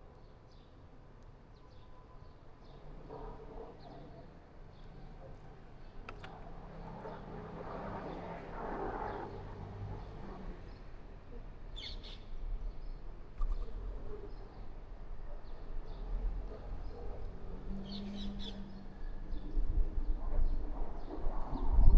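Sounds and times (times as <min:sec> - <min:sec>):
small birds chirping: 0:11.8 - 0:14.7.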